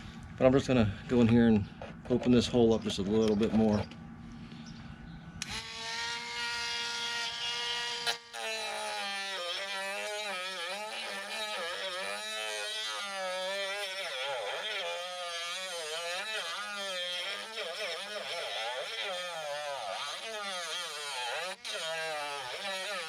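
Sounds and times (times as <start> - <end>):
bit grinding hole edge: 5.4 - 23.0
rotary tool whining: 5.4 - 23.0.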